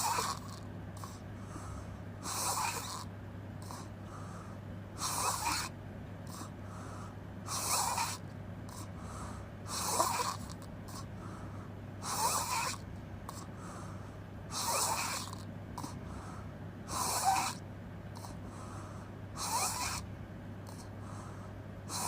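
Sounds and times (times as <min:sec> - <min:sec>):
person snoring: 0:00.0 - 0:03.9, 0:05.0 - 0:05.7, 0:07.5 - 0:11.1, 0:12.0 - 0:13.5, 0:14.5 - 0:16.0, 0:16.9 - 0:17.6, 0:19.4 - 0:20.0
steady low hum: 0:00.0 - 0:22.0.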